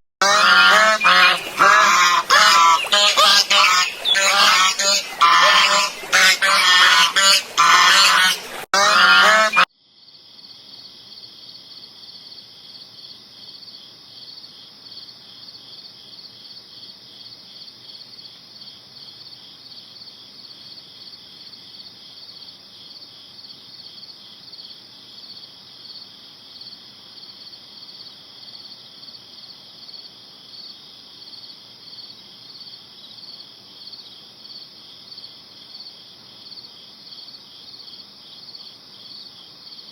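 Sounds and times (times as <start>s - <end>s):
waterfowl honking: 0.2s - 9.7s
insects chirping: 0.4s - 8.3s.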